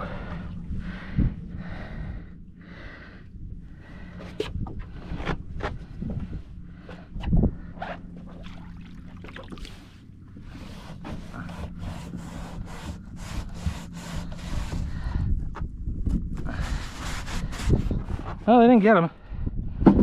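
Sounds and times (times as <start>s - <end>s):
faint low hum: 0.0s - 18.4s
rubbing and scraping handling noises: 9.5s - 18.9s.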